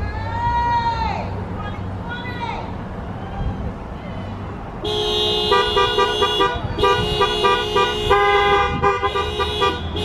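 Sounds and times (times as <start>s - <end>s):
car horns honking: 4.8s - 10.0s.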